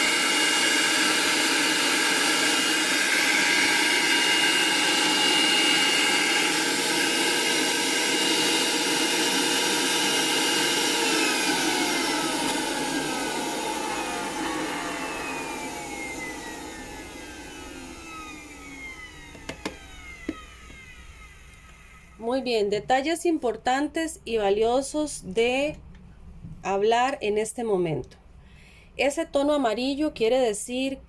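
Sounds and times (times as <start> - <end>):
vacuum motor running: 0.0 - 22.2.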